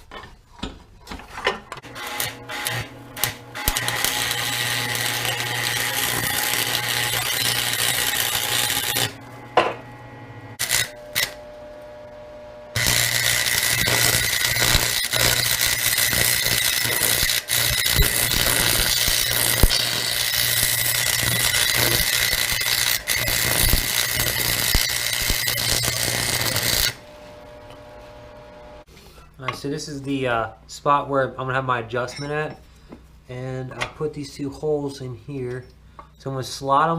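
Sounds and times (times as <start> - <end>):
electric drill boring through steel: 1.8 - 9.2, 10.6 - 11.4, 12.8 - 27.1.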